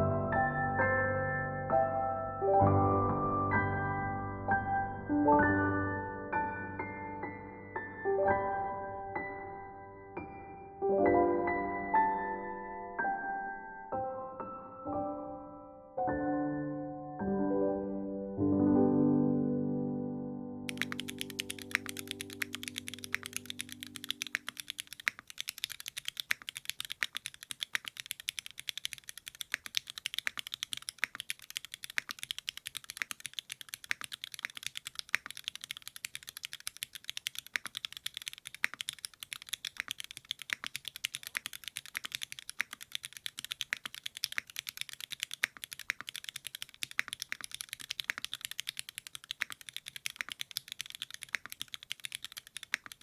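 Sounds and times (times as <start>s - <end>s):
piano music: 0.0s - 24.6s
mechanical keyboard typing: 20.7s - 53.0s.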